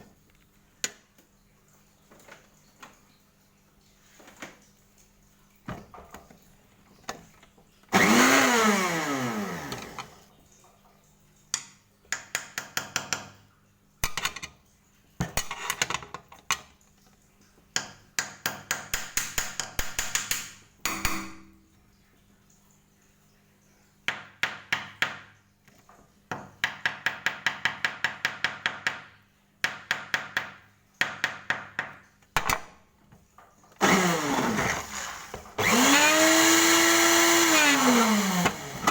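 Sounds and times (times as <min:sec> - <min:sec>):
motor whining down: 0:08.0 - 0:10.2, 0:33.8 - 0:38.9.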